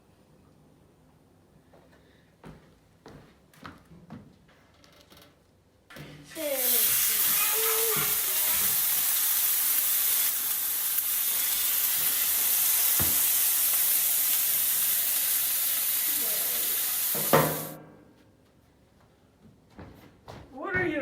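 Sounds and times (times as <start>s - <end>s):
loud sizzling hiss: 6.3s - 17.8s
knock: 13.0s - 13.2s, 17.2s - 17.7s.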